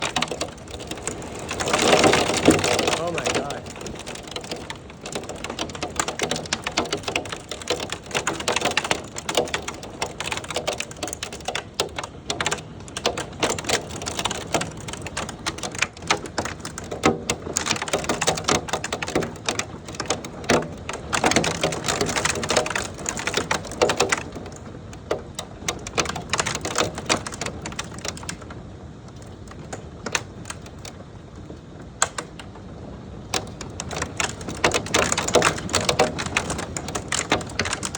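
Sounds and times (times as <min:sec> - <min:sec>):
hailstones clattering: 0:00.0 - 0:28.4, 0:33.3 - 0:37.9
rain-like hiss: 0:01.1 - 0:04.2.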